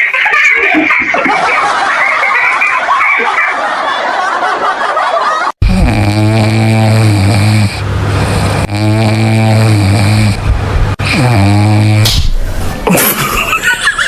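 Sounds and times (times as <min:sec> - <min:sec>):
man snoring loudly: 0:05.6 - 0:12.1.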